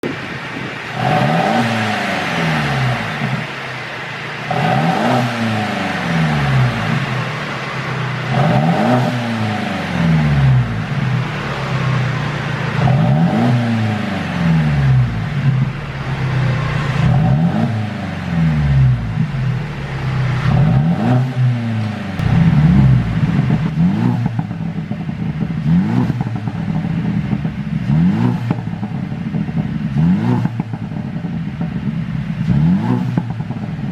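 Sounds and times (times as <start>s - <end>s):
car engine revving: 0.0s - 33.9s
exhaust pops and crackles: 18.8s - 33.9s.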